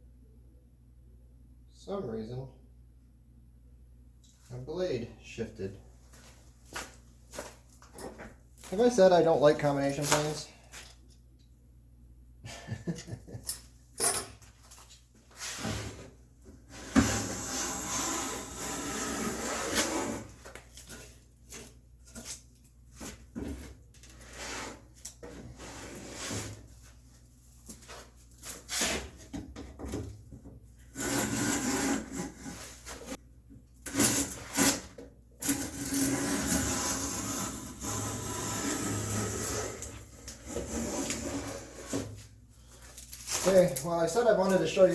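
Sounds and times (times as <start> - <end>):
hand plane scraping wood: 30.9 - 33.2, 35.5 - 42.1.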